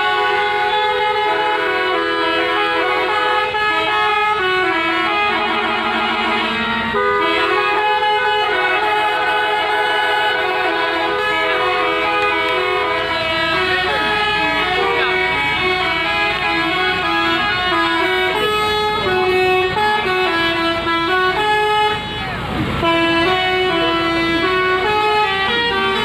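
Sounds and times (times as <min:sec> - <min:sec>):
musical multi-tone bus horns: 0:00.0 - 0:26.0.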